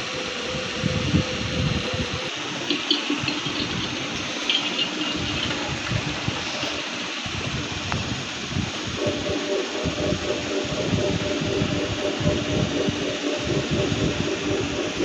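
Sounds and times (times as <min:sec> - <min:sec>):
crackling fluttering low rumble: 0:02.2 - 0:15.0
high chirps: 0:02.3 - 0:07.2
rushing hiss: 0:02.3 - 0:15.0.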